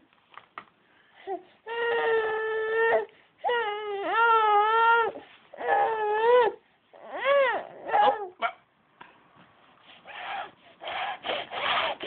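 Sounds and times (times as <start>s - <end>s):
baby crying: 1.7s - 8.4s.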